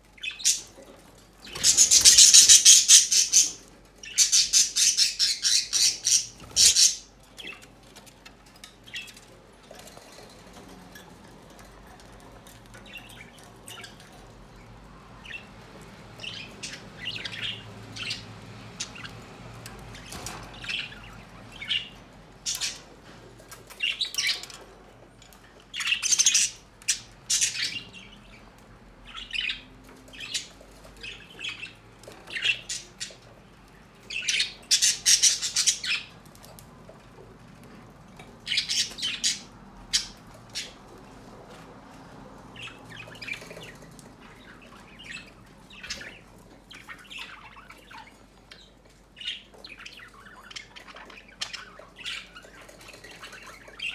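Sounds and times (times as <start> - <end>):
bird chirping and squawking: 1.4 - 7.7, 16.2 - 19.2, 19.9 - 22.9, 25.7 - 28.4, 34.0 - 36.2, 38.4 - 40.8, 42.6 - 53.9.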